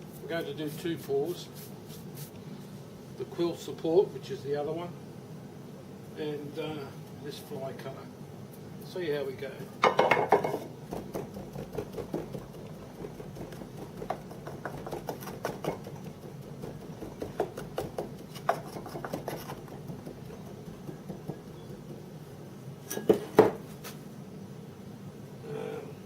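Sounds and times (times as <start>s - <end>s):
furnace burning rush: 10.4s - 24.2s.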